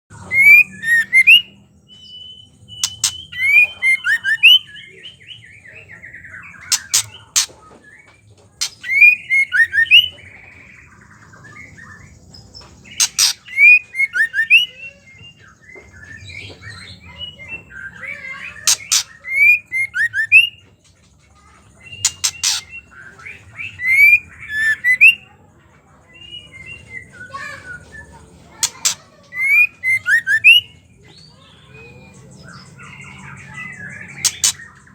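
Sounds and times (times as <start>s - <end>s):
bird chattering calls: 0.1s - 5.3s, 6.0s - 7.8s, 8.5s - 15.0s, 16.1s - 20.7s, 21.4s - 25.4s, 26.1s - 34.9s
sharp bird clicks: 2.8s - 4.6s, 6.6s - 7.6s, 8.6s - 10.0s, 12.9s - 14.6s, 18.6s - 20.5s, 21.9s - 22.7s, 34.1s - 34.9s.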